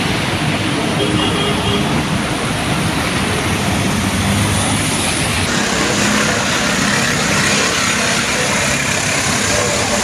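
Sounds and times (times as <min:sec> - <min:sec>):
heavy rain: 0:00.0 - 0:10.0.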